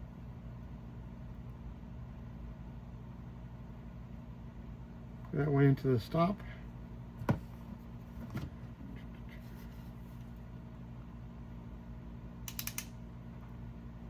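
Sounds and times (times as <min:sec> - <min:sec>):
steady low hum: 0:00.0 - 0:14.0
wire crimper ratchet clicks: 0:12.5 - 0:13.0.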